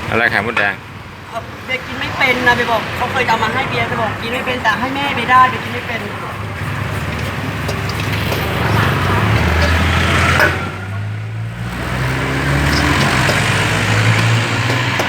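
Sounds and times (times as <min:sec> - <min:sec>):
vehicle engines passing: 0:00.0 - 0:15.0.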